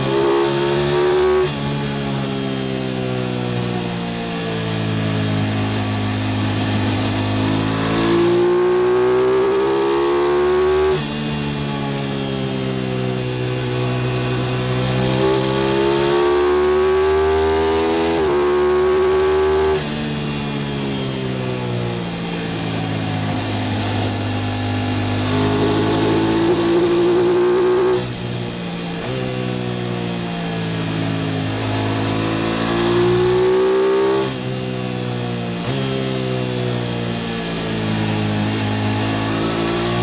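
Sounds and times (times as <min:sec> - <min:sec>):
motorcycle engine revving: 0:00.0 - 0:40.0.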